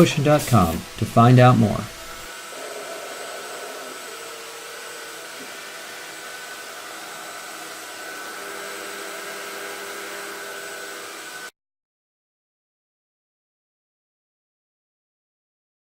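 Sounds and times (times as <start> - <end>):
even hiss: 0.0 - 9.9
machining center whine: 0.0 - 11.5.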